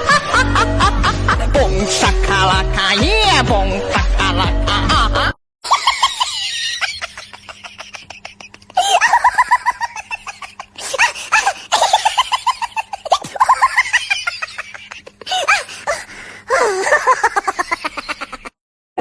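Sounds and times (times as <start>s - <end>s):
high-pitched cackling laughter: 5.7s - 16.0s, 16.6s - 18.6s.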